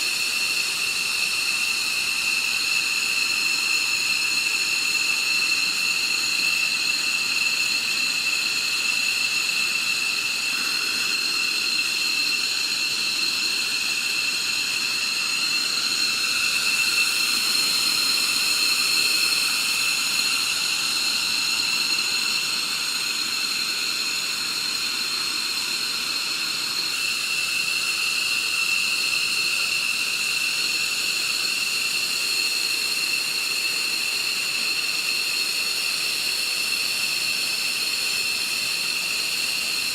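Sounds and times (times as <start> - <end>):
jet engines whining: 10.3 - 23.1.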